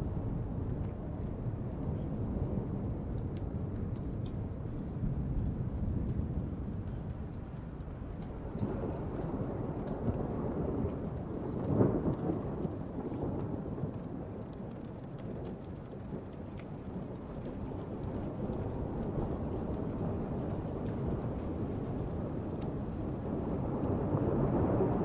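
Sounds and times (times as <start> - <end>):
heavy rain: 0.0 - 25.0
hail impacts: 0.1 - 25.0
rolling thunder: 8.1 - 25.0.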